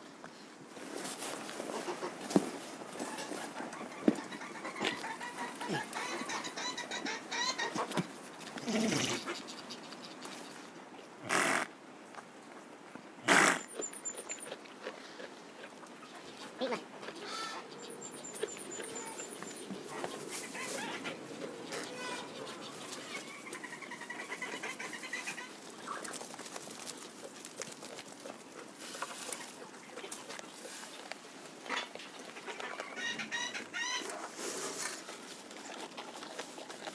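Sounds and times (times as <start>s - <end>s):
pitched animal call: 8.6s - 9.4s, 11.2s - 11.7s, 13.2s - 13.9s.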